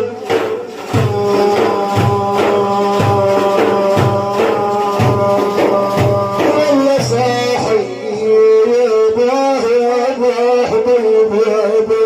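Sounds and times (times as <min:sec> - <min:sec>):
hand-struck frame drums: 0:00.0 - 0:08.4.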